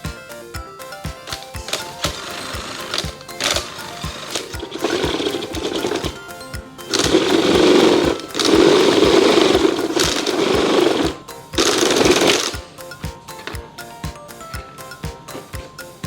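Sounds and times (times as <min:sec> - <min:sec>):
music with a steady beat: 0:00.0 - 0:16.0
power tool running: 0:01.3 - 0:12.7.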